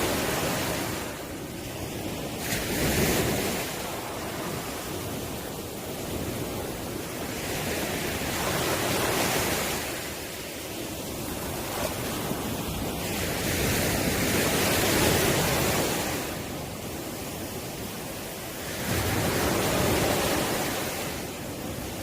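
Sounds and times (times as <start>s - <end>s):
sea waves breaking on shore: 0.0s - 22.0s
wind on microphone: 0.0s - 22.0s.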